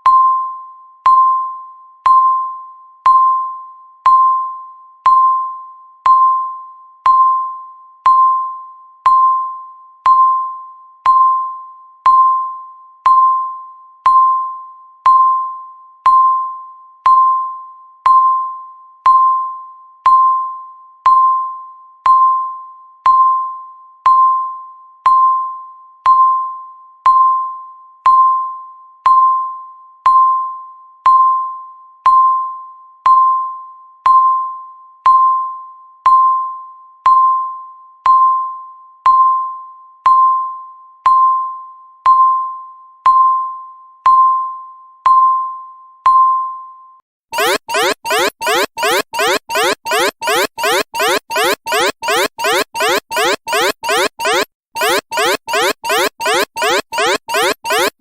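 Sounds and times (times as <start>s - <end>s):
countdown timer beeping: 47.4s - 58.0s.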